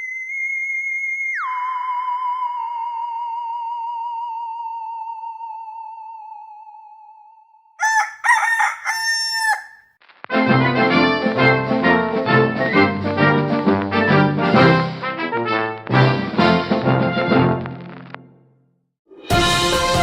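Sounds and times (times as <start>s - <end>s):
rooster crowing: 7.8s - 9.8s
music with brass: 10.3s - 17.8s, 19.3s - 20.0s.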